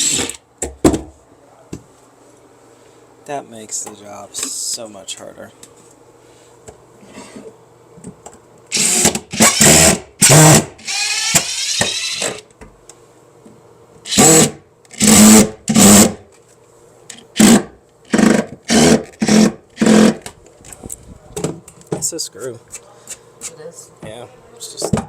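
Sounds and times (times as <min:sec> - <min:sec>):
power drill bursts: 0:00.0 - 0:00.4, 0:08.7 - 0:12.4, 0:14.1 - 0:16.2, 0:17.4 - 0:20.2.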